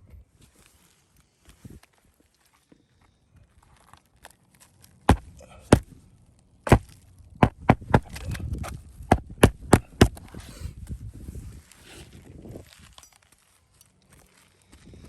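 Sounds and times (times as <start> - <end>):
sharp irregular knocks: 6.7 - 8.3, 9.1 - 10.2.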